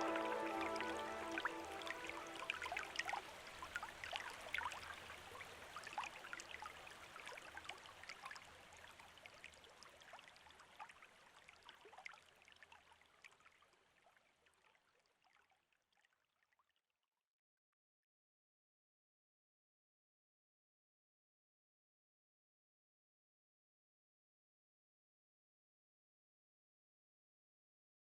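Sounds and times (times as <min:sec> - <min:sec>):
water trickling and dripping: 0:00.0 - 0:16.8.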